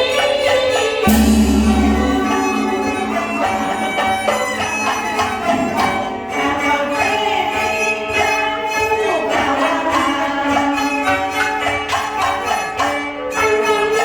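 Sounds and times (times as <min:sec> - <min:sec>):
bowed fiddles: 0:00.0 - 0:14.0
sharp percussion hit: 0:01.0 - 0:07.8.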